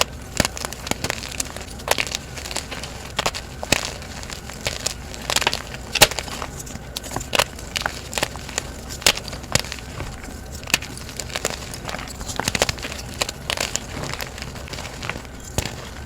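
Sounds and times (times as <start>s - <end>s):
chalk blocks being crushed: 0.0s - 16.0s.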